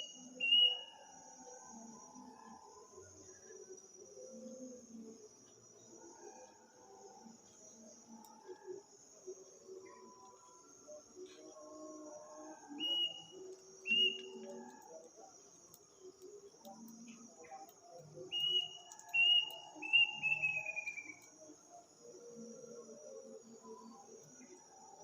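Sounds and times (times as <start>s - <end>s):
crickets chirping: 0.0s - 25.0s
bird whistling calls: 12.8s - 13.3s, 13.9s - 14.3s, 18.3s - 21.2s.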